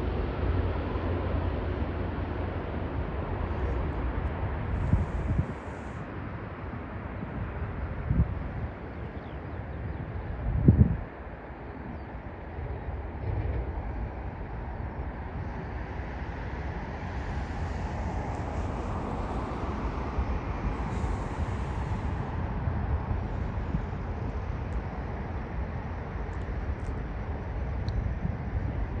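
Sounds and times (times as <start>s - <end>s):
jet airliner engine rumble: 0.0s - 29.0s
wind buffeting microphone: 1.9s - 29.0s.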